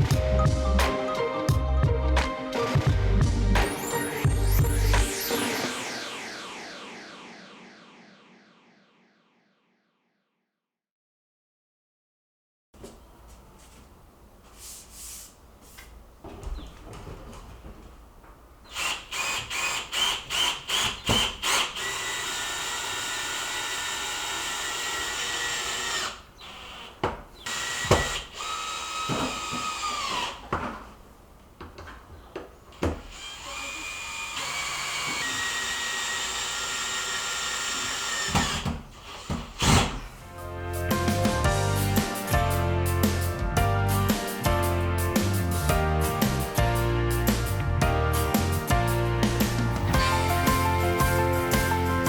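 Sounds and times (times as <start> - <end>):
power drill motor whine: 18.7 - 30.4, 33.0 - 40.1.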